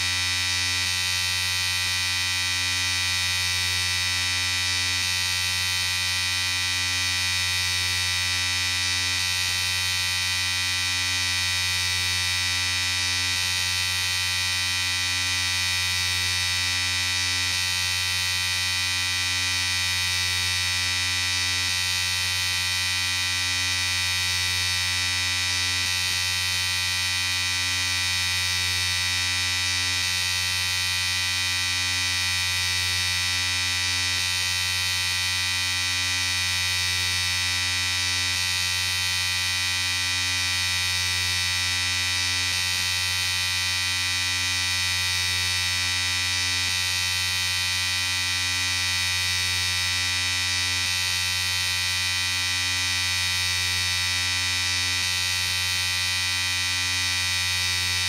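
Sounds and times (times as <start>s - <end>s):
electric shaver buzzing: 0.0s - 58.0s.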